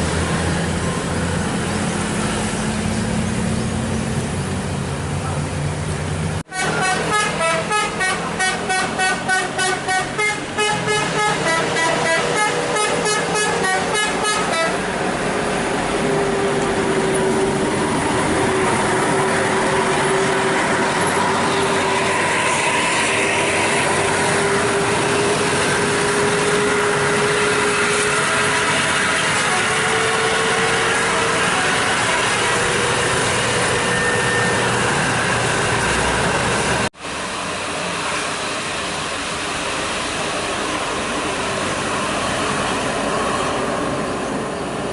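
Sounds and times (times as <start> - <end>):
road noise: 0.0 - 44.9
musical multi-tone vehicle horn: 6.5 - 14.8, 21.6 - 34.9.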